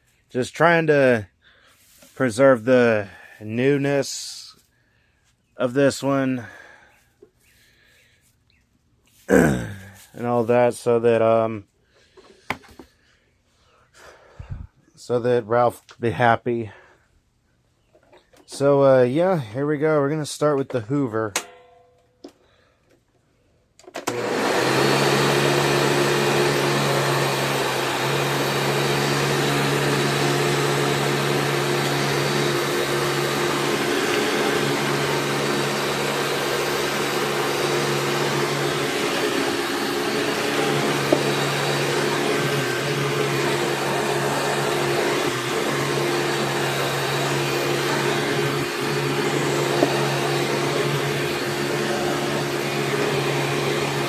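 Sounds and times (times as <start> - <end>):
upright vacuum cleaner humming: 24.0 - 54.0.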